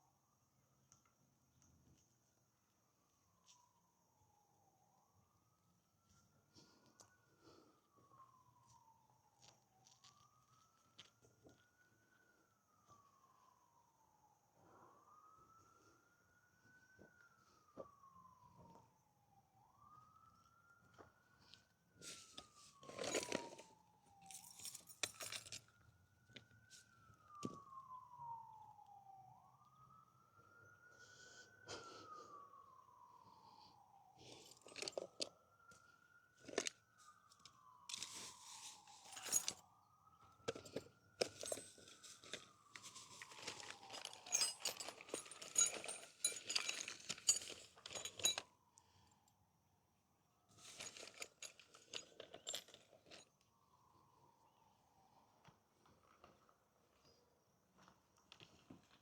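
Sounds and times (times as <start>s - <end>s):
siren wailing: 3.0s - 46.9s
metallic clinks and rattles: 43.4s - 48.5s, 50.7s - 53.2s.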